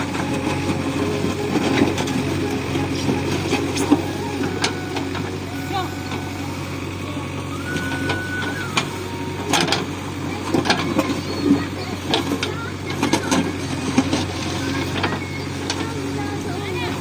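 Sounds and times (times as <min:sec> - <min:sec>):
diesel engine running: 0:00.0 - 0:17.0
bucket knocking and scraping road: 0:07.8 - 0:17.0.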